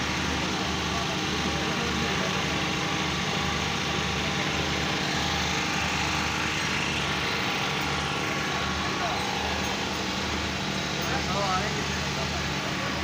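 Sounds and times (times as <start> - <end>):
small engine running: 0.0 - 13.0.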